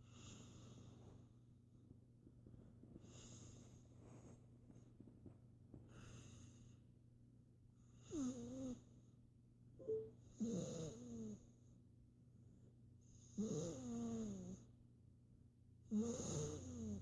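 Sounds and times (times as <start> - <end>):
wheezy snore-like breaths: 7.9 - 8.8, 13.2 - 14.6, 15.9 - 17.0.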